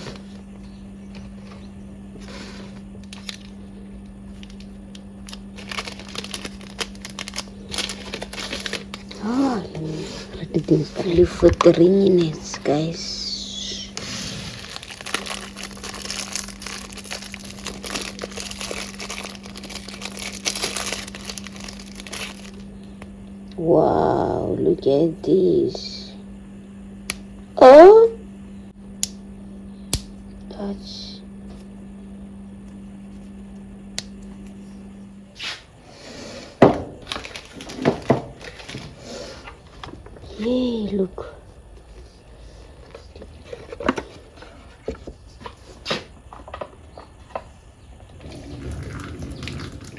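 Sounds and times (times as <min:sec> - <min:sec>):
steady low hum: 0:00.0 - 0:49.9
packaging crinkling and rustling: 0:02.2 - 0:13.0, 0:13.9 - 0:22.7, 0:37.0 - 0:40.1.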